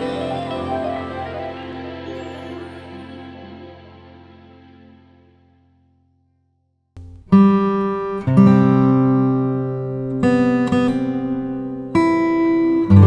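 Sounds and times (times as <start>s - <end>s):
acoustic guitar strumming chords: 0.0s - 5.6s.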